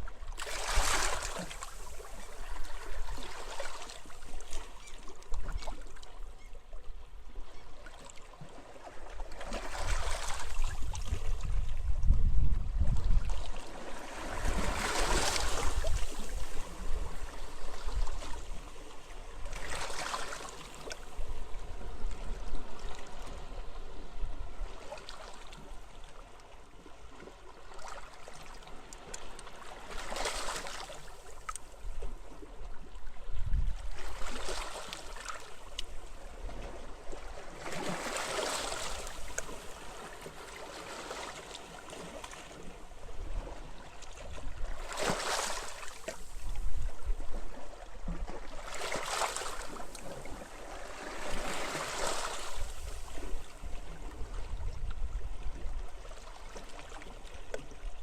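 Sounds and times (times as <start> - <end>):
sea waves breaking on a beach: 0.0 - 6.2, 6.8 - 58.0
low rumble of wind: 8.4 - 19.9, 31.2 - 37.9, 41.6 - 45.0, 45.6 - 48.8, 49.5 - 58.0.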